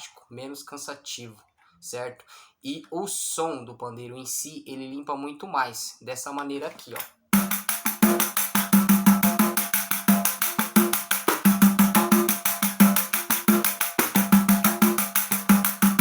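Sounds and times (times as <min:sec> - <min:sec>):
frame drum with jingles: 0:06.9 - 0:16.0.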